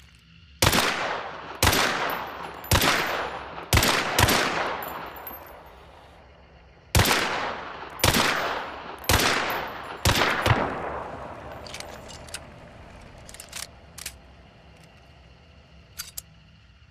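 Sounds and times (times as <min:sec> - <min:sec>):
pistol shots echoing: 0:00.6 - 0:05.7, 0:06.9 - 0:12.1.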